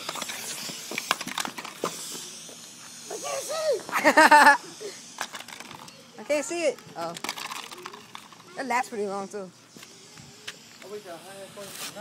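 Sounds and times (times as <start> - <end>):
smoke firework hissing: 0.0 - 7.1, 8.6 - 12.0
high-pitched yelling cries: 2.1 - 5.1.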